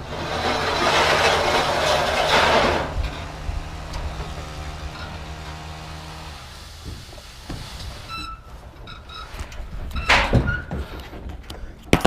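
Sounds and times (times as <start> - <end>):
door banging shut: 9.8 - 10.9.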